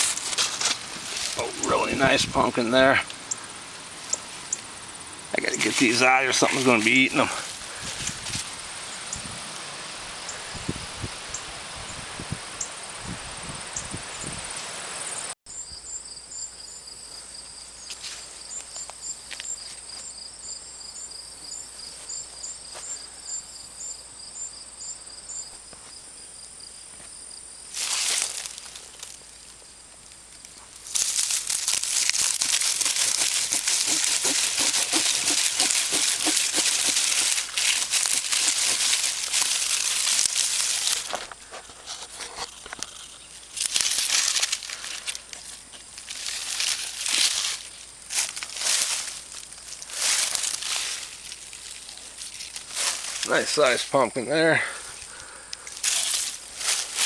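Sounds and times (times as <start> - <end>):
dry vines and leaves rustling: 0.0 - 15.0, 27.0 - 57.0.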